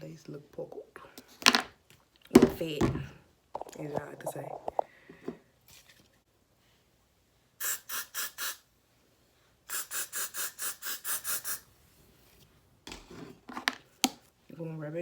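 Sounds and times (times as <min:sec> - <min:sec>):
short hissing strokes: 0:07.6 - 0:08.7, 0:09.7 - 0:11.9.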